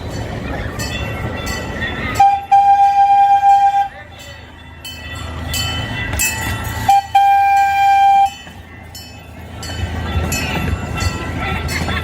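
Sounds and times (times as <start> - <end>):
miniature train rumbling: 0.0 - 12.0
train horn toots: 2.2 - 4.0, 6.8 - 8.4.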